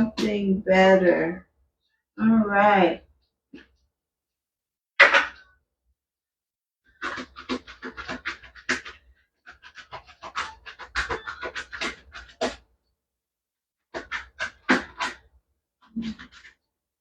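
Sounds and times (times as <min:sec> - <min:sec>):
cards being shuffled by hand: 0:07.0 - 0:12.6, 0:14.0 - 0:15.2, 0:16.0 - 0:16.6.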